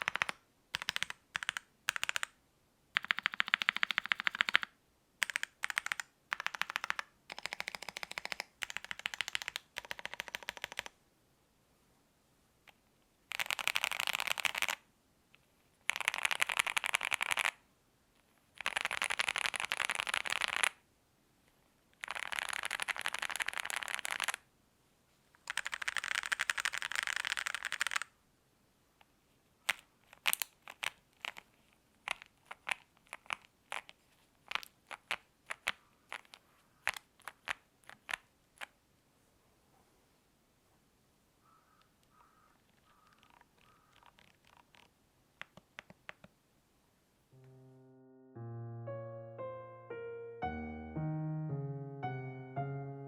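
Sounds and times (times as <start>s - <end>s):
mechanical keyboard typing: 0.0s - 2.4s, 3.0s - 11.0s, 13.3s - 14.8s, 15.8s - 17.6s, 18.6s - 20.8s, 22.0s - 24.4s, 25.5s - 28.1s, 34.5s - 38.7s, 43.0s - 46.3s.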